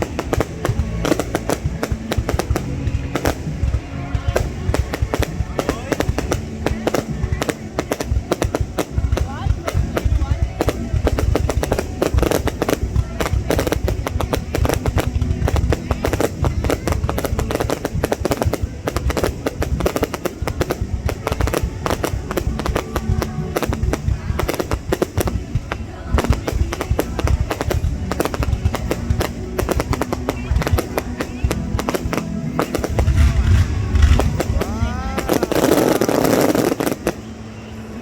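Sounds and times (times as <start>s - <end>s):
fireworks bangs and crackles: 0.0s - 38.0s
music: 0.0s - 38.0s
voices: 0.0s - 38.0s
low rumble: 31.6s - 36.0s.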